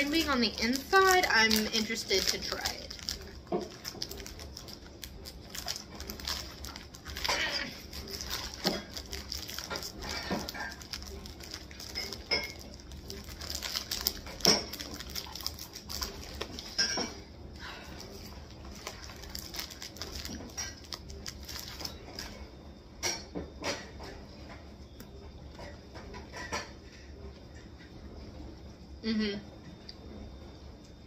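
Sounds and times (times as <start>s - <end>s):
snack package rustling: 0.0s - 16.8s, 17.8s - 22.5s
biscuit sticks crunching: 0.0s - 16.9s, 17.8s - 22.5s.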